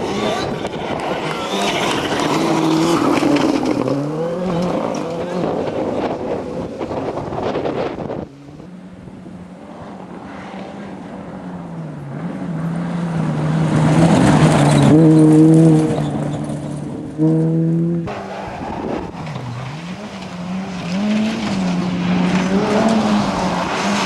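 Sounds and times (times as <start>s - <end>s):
rally car engines revving: 0.0s - 24.0s
car passing by: 18.1s - 24.0s.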